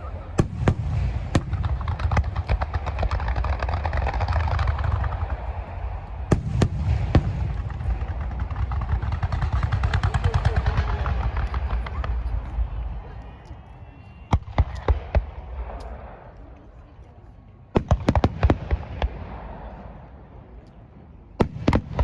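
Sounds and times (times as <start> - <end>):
fireworks booms: 0.0 - 13.3
low rumble: 0.0 - 13.4
fireworks crackling: 0.0 - 13.6.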